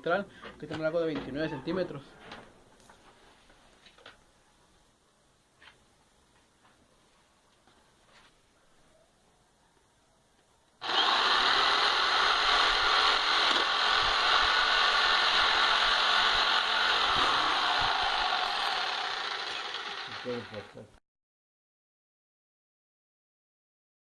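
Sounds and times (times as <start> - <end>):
power tool cutting rod: 10.8 - 20.8.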